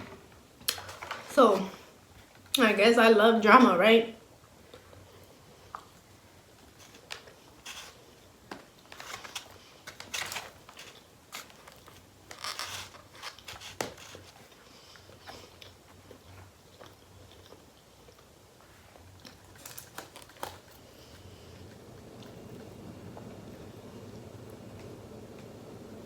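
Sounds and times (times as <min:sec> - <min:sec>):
person chewing food: 0:04.5 - 0:22.7.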